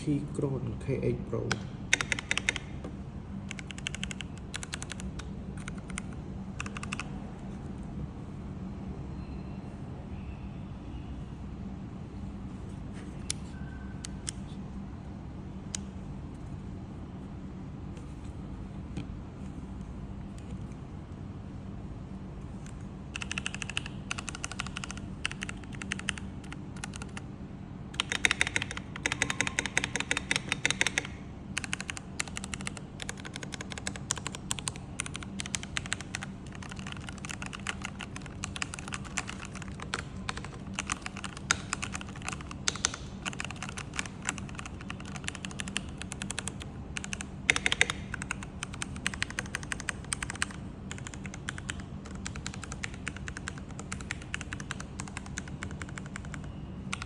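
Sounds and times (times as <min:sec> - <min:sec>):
mechanical keyboard typing: 0:01.4 - 0:02.8, 0:03.5 - 0:07.1, 0:22.6 - 0:27.2, 0:27.9 - 0:57.0.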